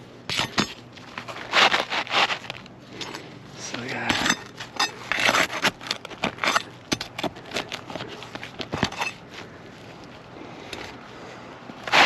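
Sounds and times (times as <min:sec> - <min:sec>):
metal tools scraping shingles: 0:00.3 - 0:09.3, 0:11.8 - 0:12.0.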